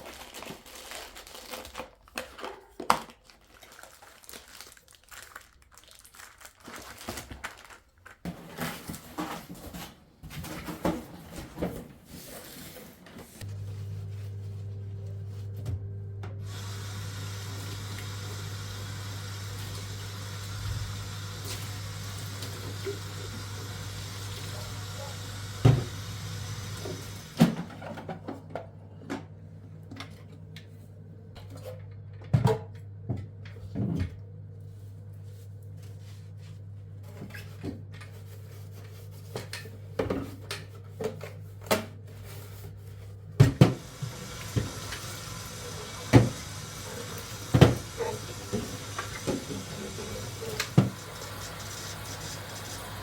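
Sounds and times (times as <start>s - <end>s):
water running from a tap: 16.4s - 27.4s, 43.8s - 53.0s.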